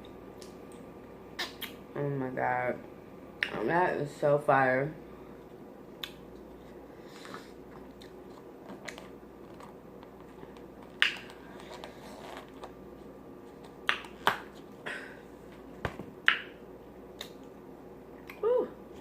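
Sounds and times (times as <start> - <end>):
chewing with wet mouth smacks: 7.7 - 9.1.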